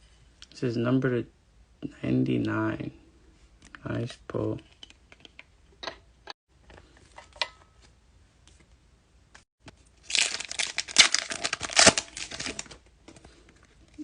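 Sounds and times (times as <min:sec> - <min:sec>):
foil wrapper crinkling: 0:09.9 - 0:12.8.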